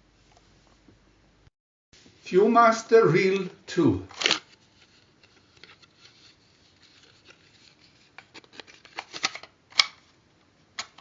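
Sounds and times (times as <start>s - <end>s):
cardboard rustling: 4.1s - 9.5s
small clicks and scrapes: 4.2s - 9.5s.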